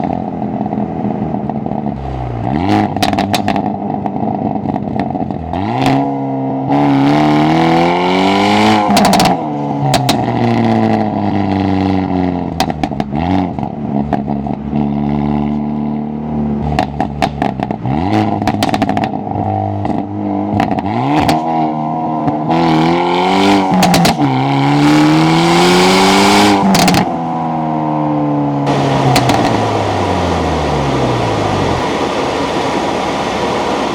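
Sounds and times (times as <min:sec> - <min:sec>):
exhaust cracks: 0:00.0 - 0:06.0, 0:16.6 - 0:21.4, 0:26.4 - 0:27.3, 0:28.6 - 0:33.9
turbocharged car engine revving: 0:00.0 - 0:15.6, 0:16.3 - 0:27.5, 0:28.6 - 0:33.9.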